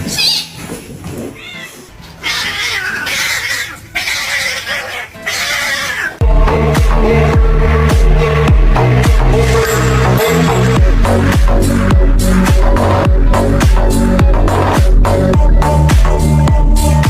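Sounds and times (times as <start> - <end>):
cat meowing: 1.3 - 6.2
electronic music with heavy bass: 6.2 - 17.0.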